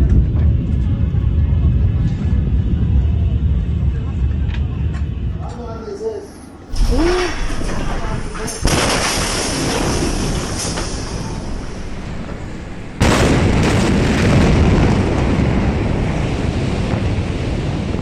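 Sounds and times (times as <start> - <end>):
explosion blast rumbling: 6.7 - 18.0.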